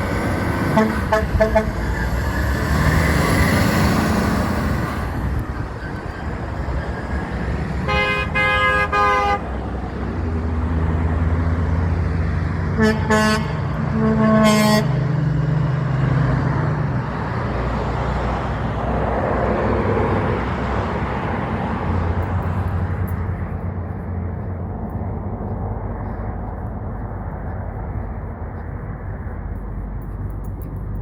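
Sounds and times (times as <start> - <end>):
truck engine and tyres passing: 0.0 - 31.0
truck horn blasts: 0.5 - 2.0, 7.7 - 9.8, 12.6 - 15.3.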